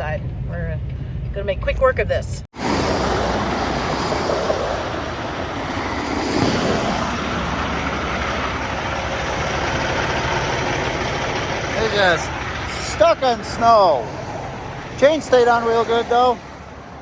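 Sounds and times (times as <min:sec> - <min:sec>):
heavy trucks and traffic passing: 0:02.5 - 0:17.0.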